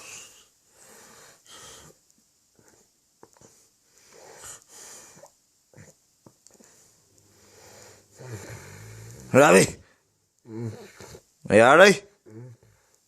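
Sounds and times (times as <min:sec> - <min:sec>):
man snoring: 0:08.0 - 0:09.8.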